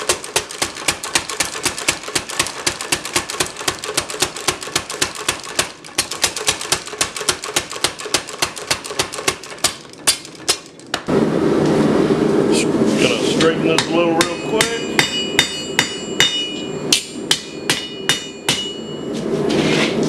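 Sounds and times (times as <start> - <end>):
power hammer hitting hot steel: 13.7 - 19.0.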